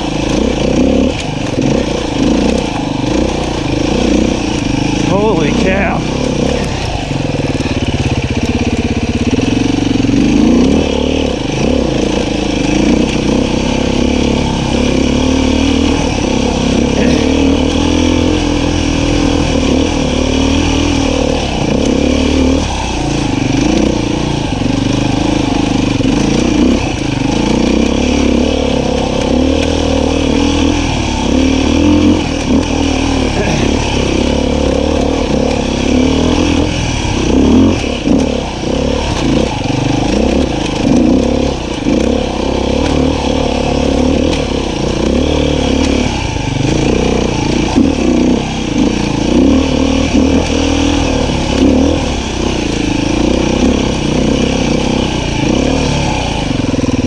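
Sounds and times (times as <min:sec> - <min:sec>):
dirt bike engine revving: 0:00.0 - 0:57.0.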